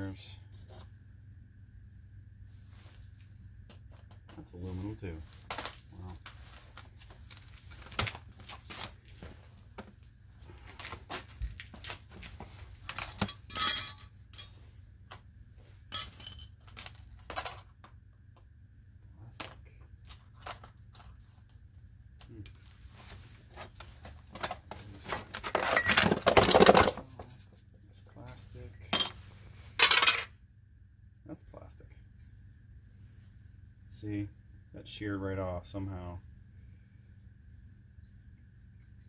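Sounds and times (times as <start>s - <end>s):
small metal parts clinking: 12.9s - 14.6s, 15.9s - 17.9s, 25.1s - 27.3s, 29.8s - 30.3s.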